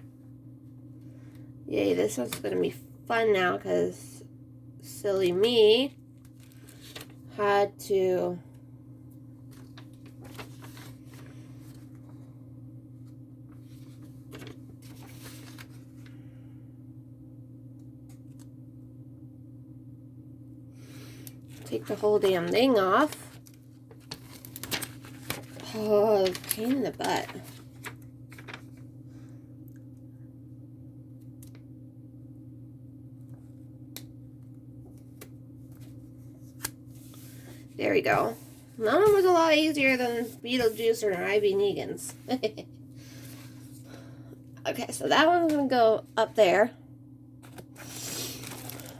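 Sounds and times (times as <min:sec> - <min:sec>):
low electrical hum: 0:00.0 - 0:48.9
packaging rustling and clicking: 0:23.2 - 0:25.6, 0:26.2 - 0:26.8, 0:47.4 - 0:48.9.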